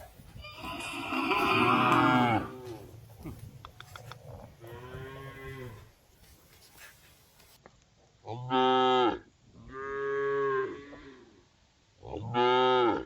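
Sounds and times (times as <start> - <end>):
cows mooing: 0.6 - 2.9.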